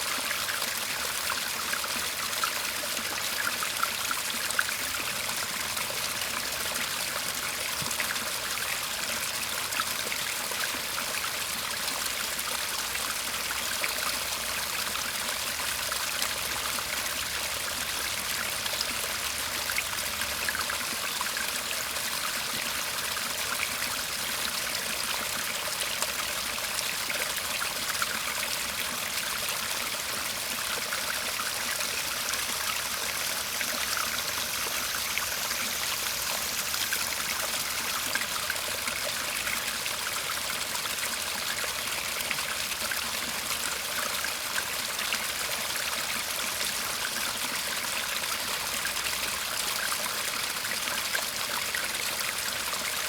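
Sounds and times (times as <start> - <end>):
brook babbling and trickling: 0.0 - 53.0.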